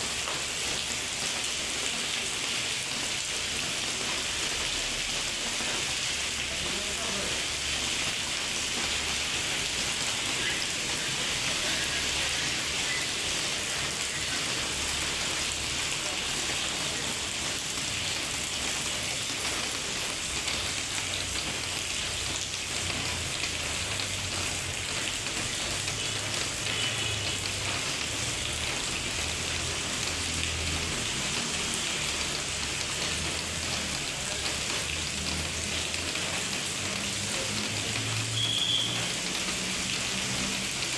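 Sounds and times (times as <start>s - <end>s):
heavy rain falling: 0.0s - 40.9s.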